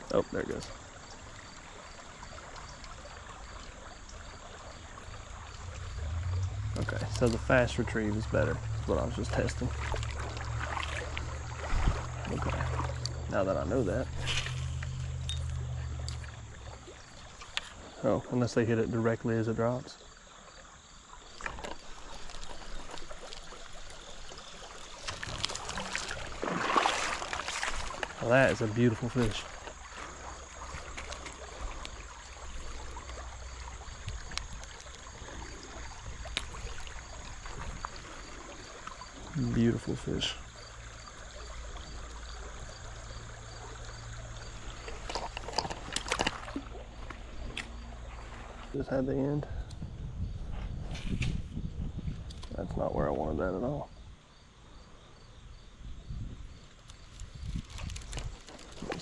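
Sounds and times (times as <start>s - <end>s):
creek water trickling: 0.0s - 59.0s
insect chirping: 0.0s - 59.0s
water splash: 1.6s - 17.9s, 21.3s - 48.7s.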